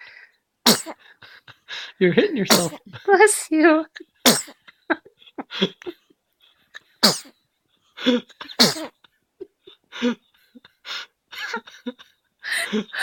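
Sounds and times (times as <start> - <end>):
baby sneezing: 0.6 - 1.0, 2.5 - 2.9, 4.2 - 4.6, 7.0 - 7.3, 8.6 - 8.9.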